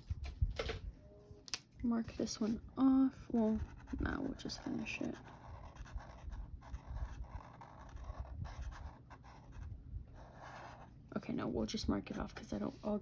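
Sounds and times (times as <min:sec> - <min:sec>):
marker scratching on paper: 0:03.3 - 0:10.9.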